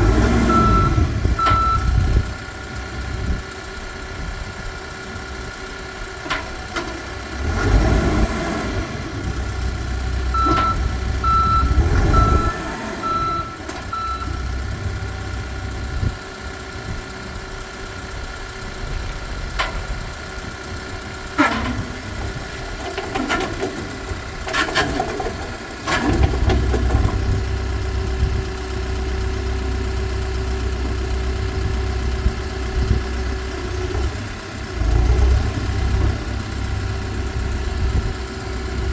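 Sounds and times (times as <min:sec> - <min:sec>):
diesel engine revving: 0:00.0 - 0:38.9
reversing alarm beeps: 0:00.4 - 0:02.0, 0:10.4 - 0:14.5.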